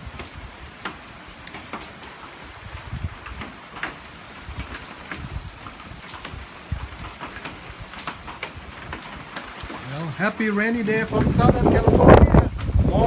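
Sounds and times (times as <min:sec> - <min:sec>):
heavy rain falling: 0:00.0 - 0:13.0
raindrops tapping: 0:00.0 - 0:13.0
wind gusts on microphone: 0:02.4 - 0:13.0.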